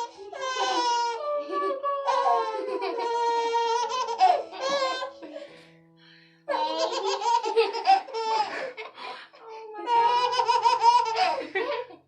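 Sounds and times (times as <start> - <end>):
baby laughing: 0.0 - 5.4, 6.5 - 9.0, 9.9 - 11.5
soft background music: 0.0 - 11.8.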